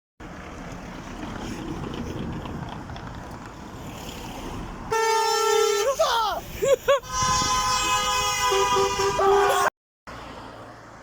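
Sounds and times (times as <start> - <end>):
traffic noise: 0.2 - 11.0
wind: 0.2 - 11.0
truck horn blast: 4.9 - 6.0, 7.0 - 9.7.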